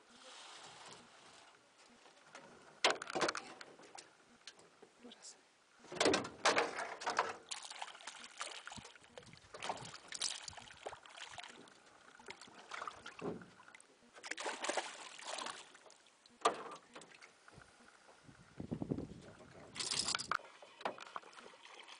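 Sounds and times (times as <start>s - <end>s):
water splashing around boat: 6.5s - 18.2s.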